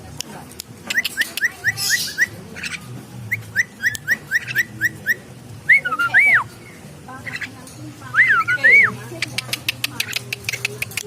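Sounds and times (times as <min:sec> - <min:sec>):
bird chirping: 0:00.9 - 0:06.6.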